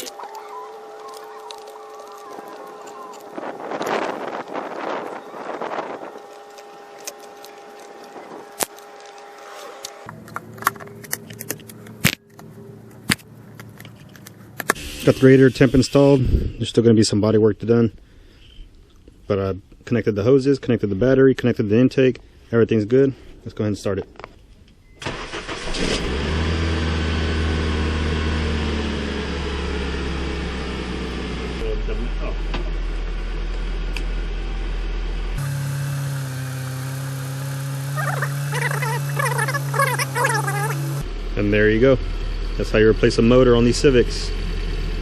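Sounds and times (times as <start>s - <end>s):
starter motor cranking: 25.0s - 26.2s
car engine idling: 37.6s - 45.0s.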